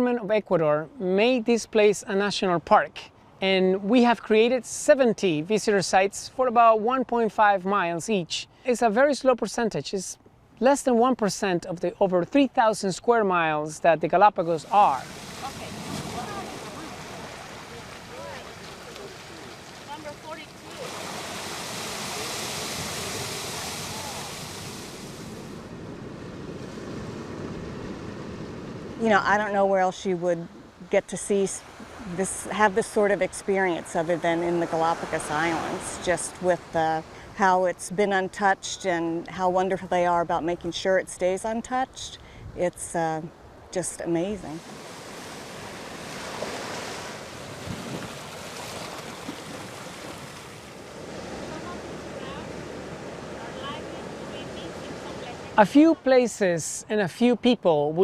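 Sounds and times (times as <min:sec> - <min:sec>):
ocean surf washing on shore: 0:14.4 - 0:37.4, 0:44.3 - 0:56.2
waves washing on rocky shore: 0:14.6 - 0:25.7
wind buffeting microphone: 0:44.5 - 0:55.3
wind on microphone: 0:45.6 - 0:50.3.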